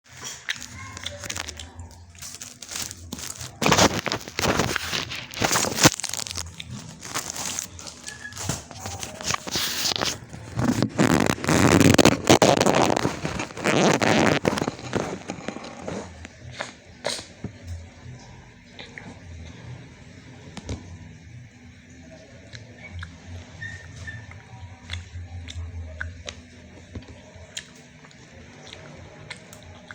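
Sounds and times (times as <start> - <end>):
corn frying in hot oil: 0.2 - 16.3.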